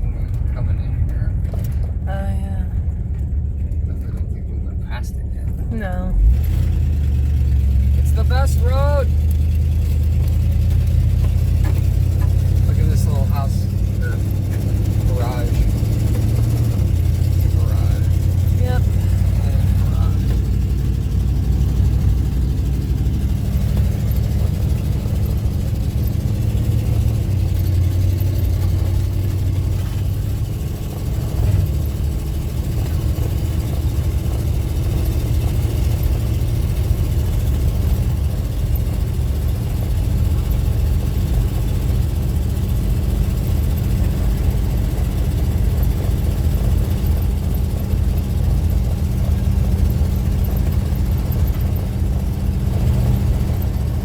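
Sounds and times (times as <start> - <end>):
car engine and road rumble: 0.0 - 54.0.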